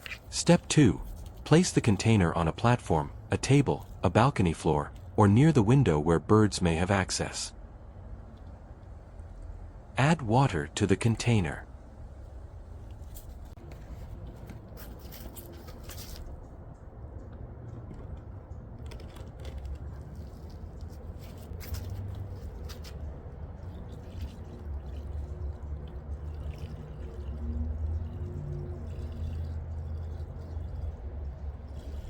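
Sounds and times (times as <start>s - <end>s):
water pouring and trickling: 18.8s - 32.0s
small splashes: 20.4s - 32.0s.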